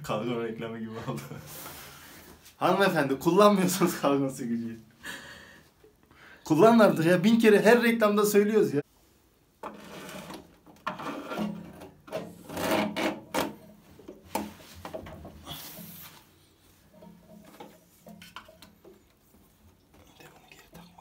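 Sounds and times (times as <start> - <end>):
scraping and rubbing of machine parts: 9.6 - 19.7
small knocks: 16.9 - 19.6.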